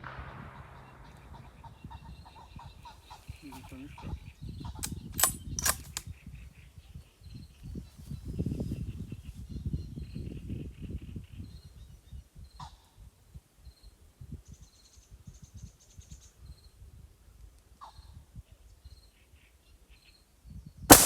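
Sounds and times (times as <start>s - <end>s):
low uneven rumble: 0.0s - 4.2s
small birds chirping: 0.8s - 11.7s.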